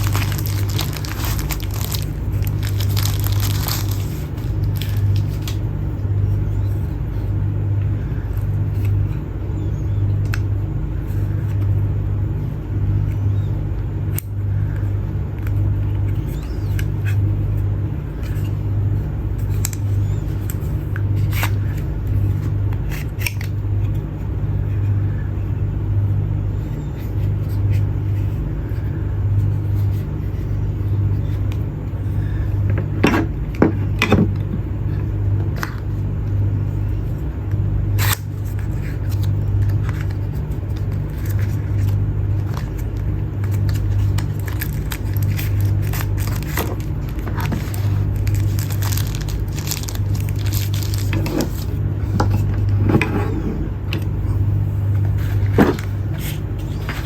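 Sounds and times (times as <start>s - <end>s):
packaging clicks and scrapes: 0.0s - 5.7s, 38.0s - 54.2s
steady low hum: 0.0s - 57.0s.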